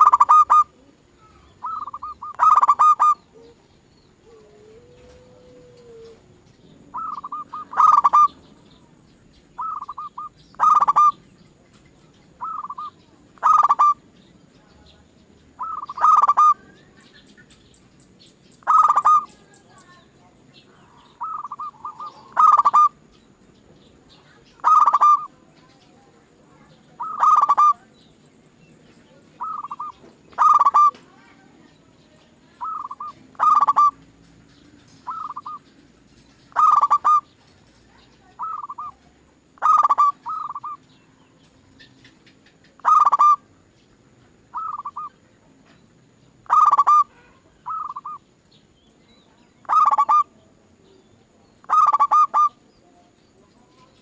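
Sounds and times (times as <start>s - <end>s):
doves cooing: 0.0s - 8.6s, 9.5s - 11.7s, 12.3s - 14.1s, 15.6s - 16.8s, 18.6s - 19.6s, 20.8s - 23.1s, 24.6s - 25.9s, 27.0s - 27.9s, 29.2s - 31.2s, 32.6s - 43.8s, 44.5s - 45.2s, 46.4s - 48.2s, 49.6s - 50.4s, 51.6s - 52.7s.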